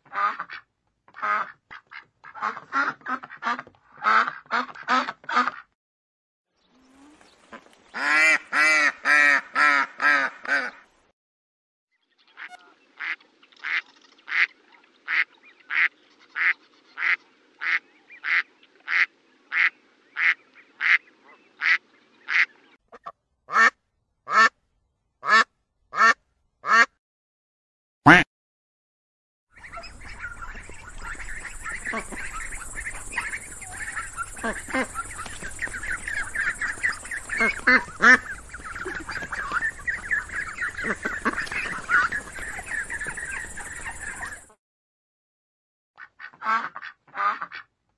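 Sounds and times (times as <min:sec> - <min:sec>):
ducks quacking: 0:00.0 - 0:05.7, 0:06.9 - 0:10.8, 0:12.4 - 0:23.7, 0:29.6 - 0:44.5, 0:46.0 - 0:47.7.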